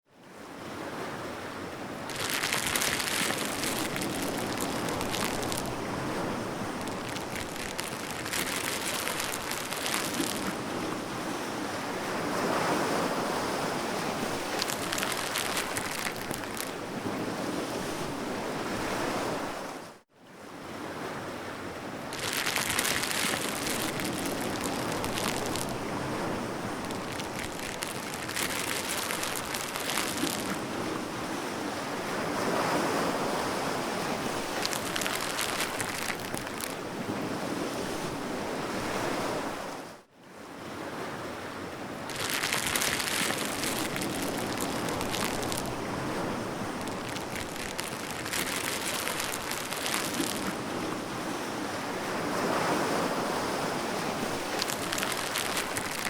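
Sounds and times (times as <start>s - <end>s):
water washing and splashing: 2.0s - 17.2s, 22.1s - 31.1s, 33.9s - 37.0s, 42.1s - 51.1s, 53.6s - 56.0s.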